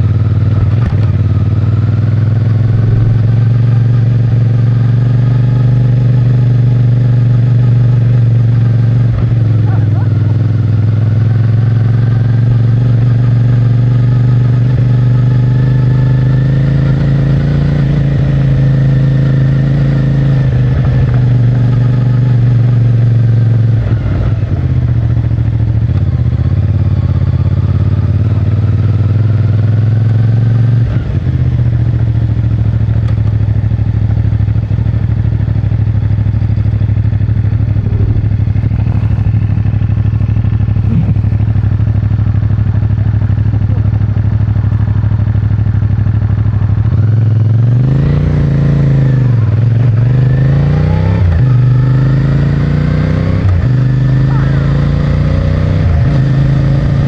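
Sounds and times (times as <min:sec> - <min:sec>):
motorcycle engine accelerating: 0:00.0 - 0:57.0.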